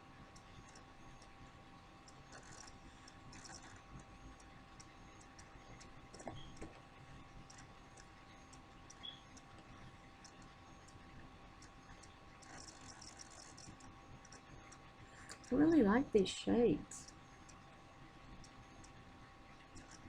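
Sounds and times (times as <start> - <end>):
faint steady whine: 0.0 - 20.0
light ticking clicks: 2.0 - 6.7, 7.4 - 11.0, 17.0 - 17.7, 18.4 - 19.0.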